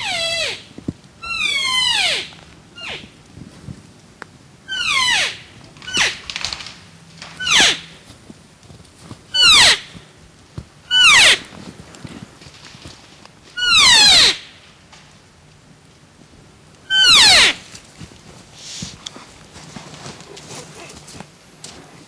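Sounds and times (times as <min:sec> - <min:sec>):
elk calls: 0:01.2 - 0:03.0, 0:13.6 - 0:14.4.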